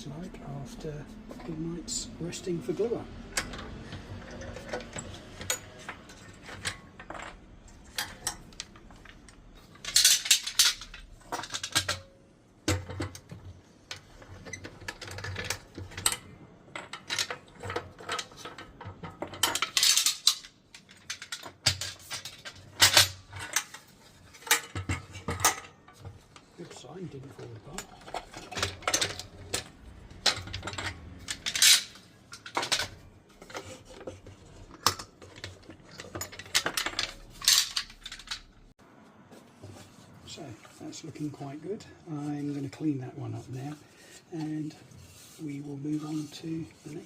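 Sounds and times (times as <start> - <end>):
metal clamps clicking and knocking: 3.2 - 38.7
metallic clanking and rattling: 27.3 - 38.7.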